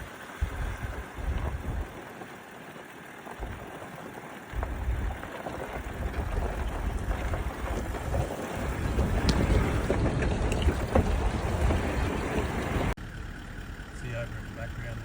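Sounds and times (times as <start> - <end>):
wind buffeting microphone: 0.0 - 2.1, 3.4 - 13.0
steady outdoor hiss: 0.0 - 8.8.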